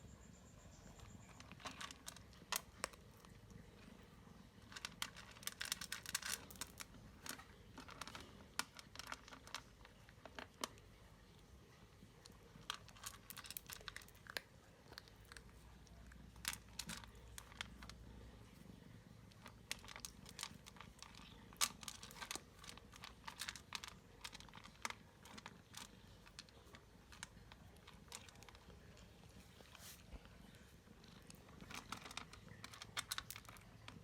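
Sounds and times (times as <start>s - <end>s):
cat chewing food: 1.0s - 34.0s.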